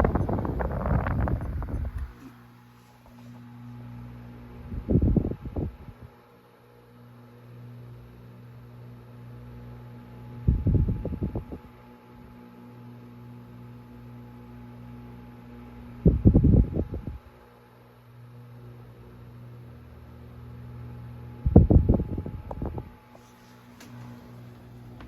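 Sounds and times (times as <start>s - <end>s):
wind buffeting microphone: 0.0s - 2.2s, 4.6s - 6.0s, 10.4s - 11.6s
table fan motor humming: 0.0s - 6.0s, 19.0s - 25.0s.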